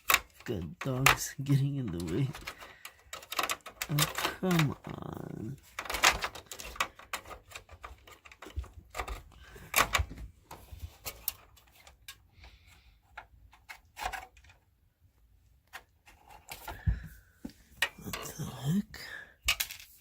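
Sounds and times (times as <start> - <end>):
plastic and metal clicks: 0.0 - 5.0.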